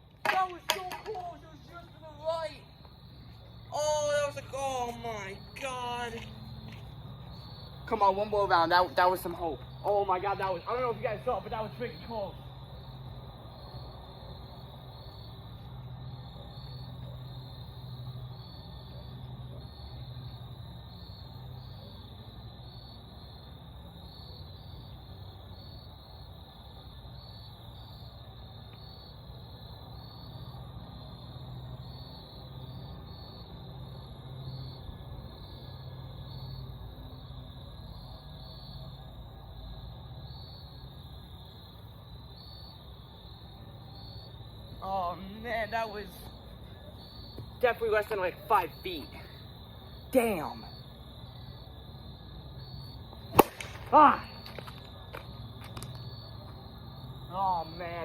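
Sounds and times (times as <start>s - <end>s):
insects chirping: 0.0s - 58.0s.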